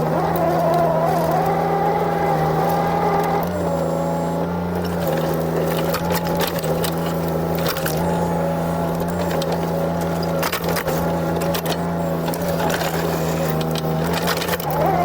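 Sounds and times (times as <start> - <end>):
diesel engine running: 0.0 - 15.0
hydraulic whine: 0.0 - 15.0.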